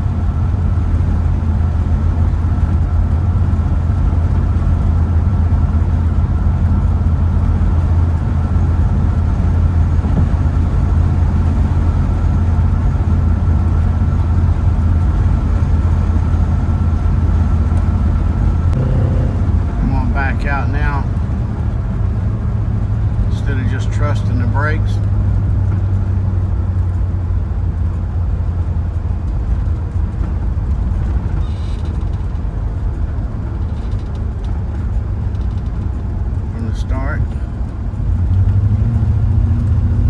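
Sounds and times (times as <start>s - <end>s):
engine and road drone: 0.0s - 40.0s.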